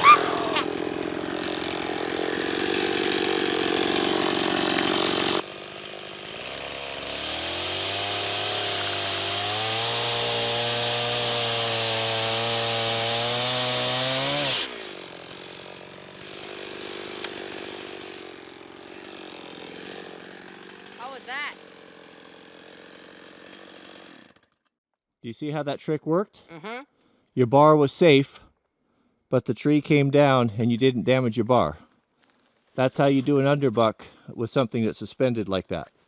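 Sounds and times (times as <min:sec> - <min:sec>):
chainsaw cutting log: 0:00.0 - 0:24.7.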